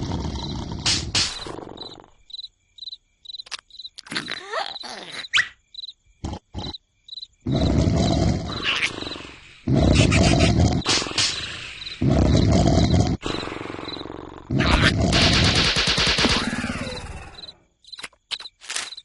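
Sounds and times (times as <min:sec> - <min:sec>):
cartoon snoring: 0:00.0 - 0:02.2, 0:06.2 - 0:06.8, 0:07.4 - 0:15.4
cricket-like chirp: 0:00.0 - 0:15.6, 0:16.4 - 0:19.0.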